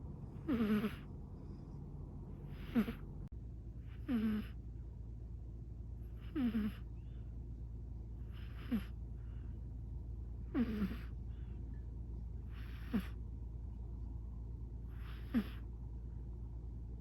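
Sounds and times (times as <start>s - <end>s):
cat snoring: 0.4s - 3.1s, 3.8s - 4.6s, 6.1s - 6.9s, 8.2s - 9.4s, 10.4s - 11.2s, 12.4s - 13.2s, 14.9s - 15.7s.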